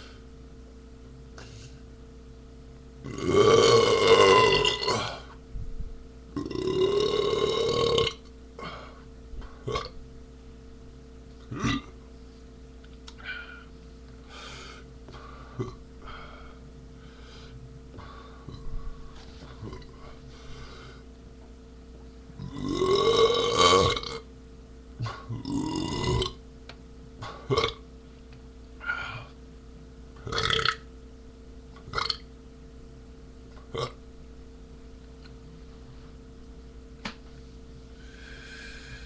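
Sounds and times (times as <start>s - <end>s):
man burping: 3.0s - 5.4s, 6.4s - 8.9s, 9.6s - 10.0s, 11.4s - 12.0s, 15.6s - 15.8s, 19.6s - 20.0s, 22.4s - 24.3s, 25.0s - 26.4s, 27.2s - 27.8s, 30.2s - 30.8s, 31.9s - 32.2s, 33.7s - 34.0s.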